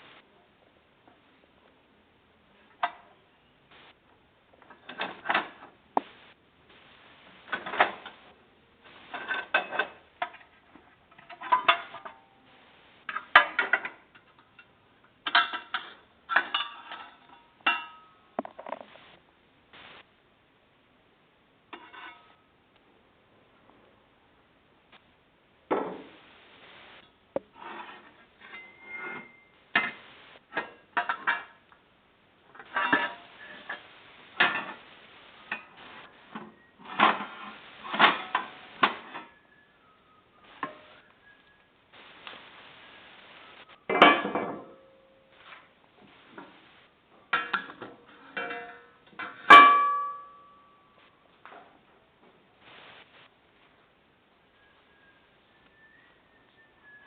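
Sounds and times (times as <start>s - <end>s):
tools clattering on a workbench: 13.1s - 18.9s
ringing metallic clanks: 28.4s - 29.6s.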